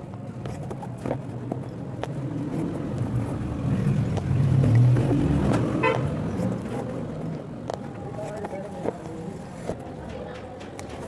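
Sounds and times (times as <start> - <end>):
vehicle engine rumbling past: 2.1 - 7.4.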